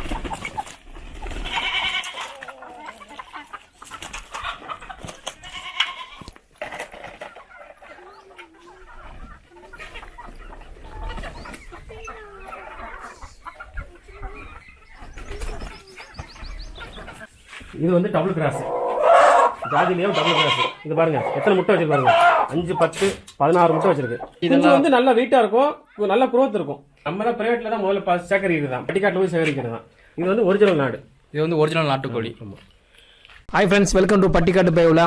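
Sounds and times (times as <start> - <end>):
chickens clucking and calling: 0.0 - 33.4.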